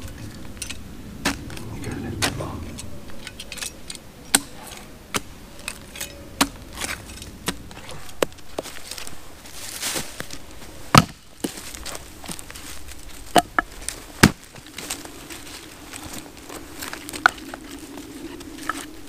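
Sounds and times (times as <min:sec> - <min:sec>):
sticks snapping: 0:00.0 - 0:09.1
rustle: 0:00.0 - 0:19.0.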